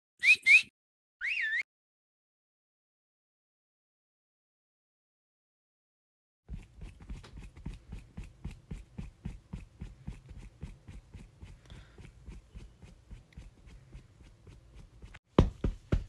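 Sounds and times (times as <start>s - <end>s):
dull footfall thuds: 15.4s - 16.0s.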